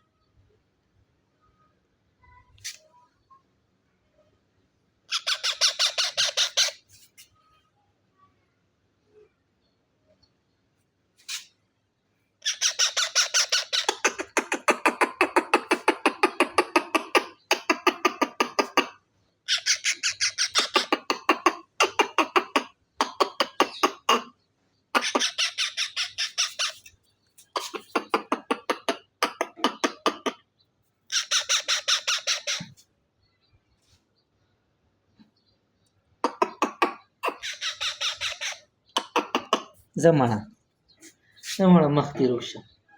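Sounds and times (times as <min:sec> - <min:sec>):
baby parrot squawking: 0:05.1 - 0:06.8, 0:12.4 - 0:18.9, 0:19.5 - 0:24.3, 0:25.0 - 0:26.9, 0:27.5 - 0:30.4, 0:31.1 - 0:32.7, 0:36.3 - 0:39.8.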